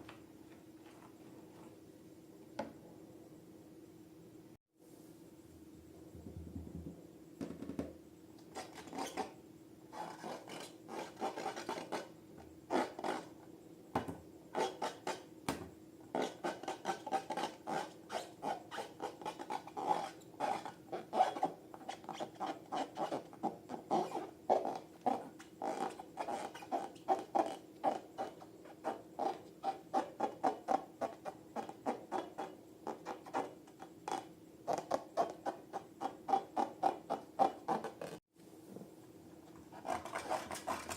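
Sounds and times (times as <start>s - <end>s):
faint low hum: 0.0s - 17.8s.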